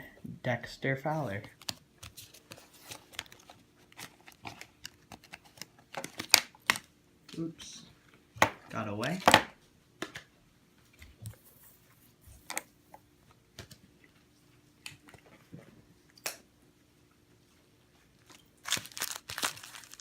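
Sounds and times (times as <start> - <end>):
foil wrappers crinkling: 1.4 - 6.9, 18.2 - 20.0.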